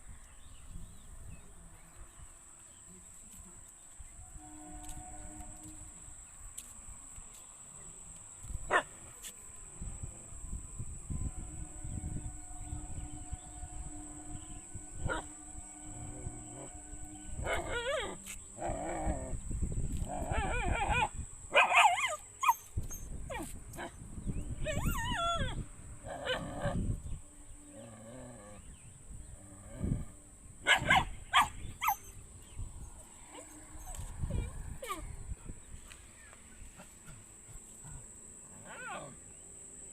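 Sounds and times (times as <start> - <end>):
dog barking: 8.7 - 9.0, 20.4 - 22.1, 30.7 - 32.0.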